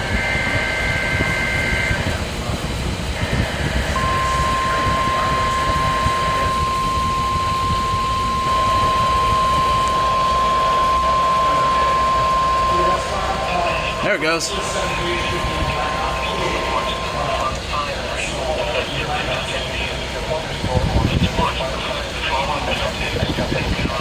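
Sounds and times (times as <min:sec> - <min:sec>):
two-pitch data warble: 0:00.0 - 0:02.2, 0:03.1 - 0:19.0
radio static: 0:00.0 - 0:24.0
steady warning alarm tone: 0:00.0 - 0:24.0.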